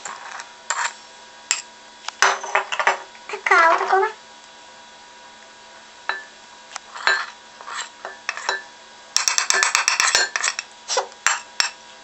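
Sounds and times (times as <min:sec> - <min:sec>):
metal spoon clinking on dish: 0:06.1 - 0:06.3, 0:07.0 - 0:07.4, 0:08.1 - 0:10.7, 0:11.3 - 0:11.8.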